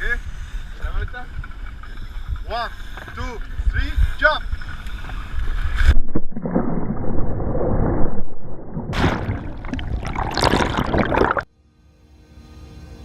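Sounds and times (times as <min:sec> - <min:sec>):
water splashing and bubbling: 0:05.8 - 0:11.5
music: 0:11.6 - 0:13.0.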